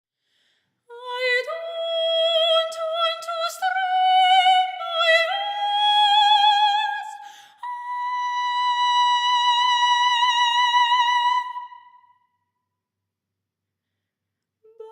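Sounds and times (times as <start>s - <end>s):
soprano singing with vibrato: 0.9s - 12.2s, 14.6s - 14.9s.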